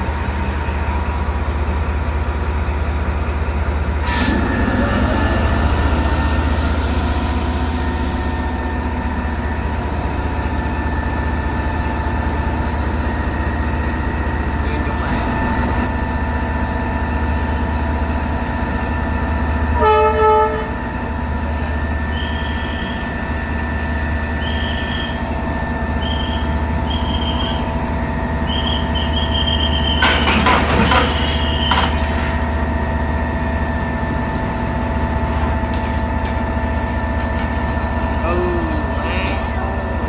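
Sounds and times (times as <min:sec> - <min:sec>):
toy train horn: 0:19.8 - 0:20.8
clatter: 0:30.0 - 0:32.5.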